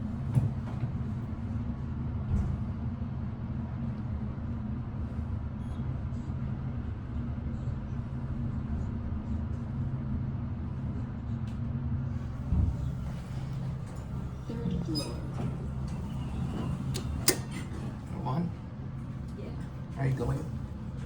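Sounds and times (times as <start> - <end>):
elevator rumble and hum: 0.0 - 21.0.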